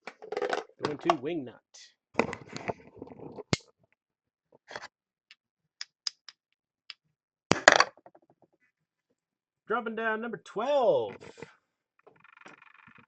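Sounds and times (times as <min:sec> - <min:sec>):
cards and plastic holders clicking: 0:05.8 - 0:06.4.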